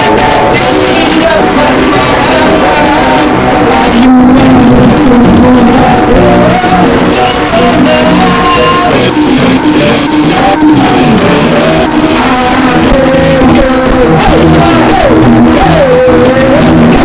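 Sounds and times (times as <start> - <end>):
band playing: 0.0 - 17.0
person singing: 0.0 - 17.0.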